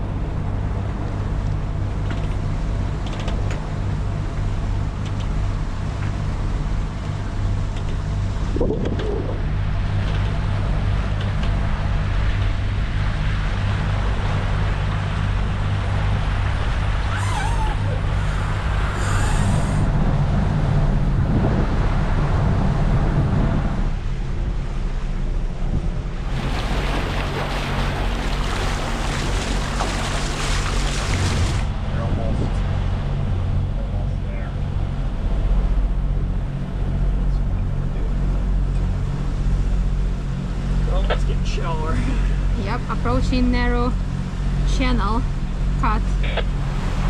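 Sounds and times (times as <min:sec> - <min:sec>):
boat engine running: 0:00.0 - 0:47.0
water rushing along hulls: 0:00.0 - 0:47.0
wind buffeting microphone: 0:08.1 - 0:17.1, 0:19.8 - 0:33.7.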